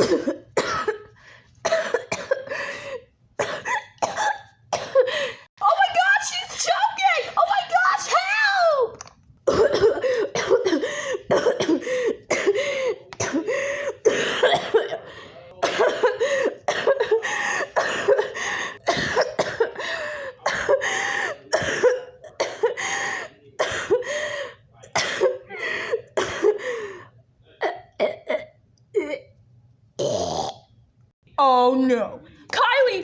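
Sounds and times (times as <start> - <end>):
person coughing and choking: 0.0 - 1.1, 1.7 - 2.6, 3.4 - 5.3, 9.5 - 22.8, 23.6 - 24.0, 24.9 - 26.6, 27.6 - 29.3, 30.0 - 30.6.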